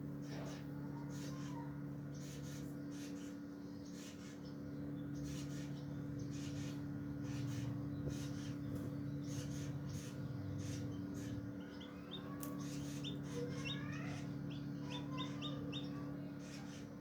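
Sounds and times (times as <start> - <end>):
steady hum: 0.0 - 17.0
chick peeping: 5.2 - 16.9.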